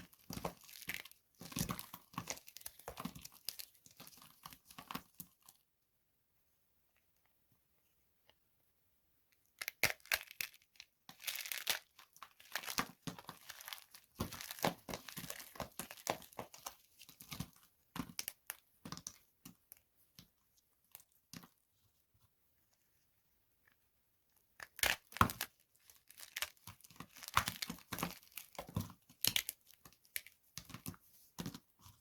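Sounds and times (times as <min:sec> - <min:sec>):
dry soap crunching: 0:00.0 - 0:05.6, 0:09.6 - 0:19.6, 0:24.6 - 0:32.0.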